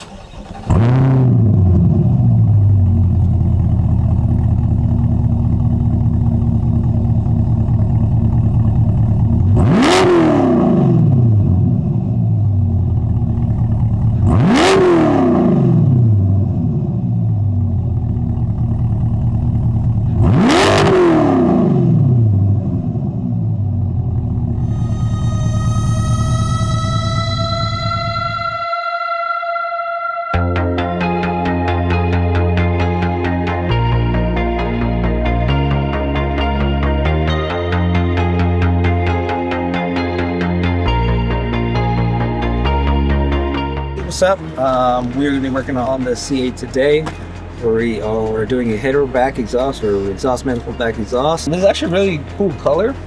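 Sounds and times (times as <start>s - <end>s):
engine revving: 0.0s - 28.6s, 32.4s - 53.0s
car engine idling: 0.0s - 28.7s, 44.0s - 53.0s
car engine starting: 0.0s - 28.7s, 31.0s - 53.0s.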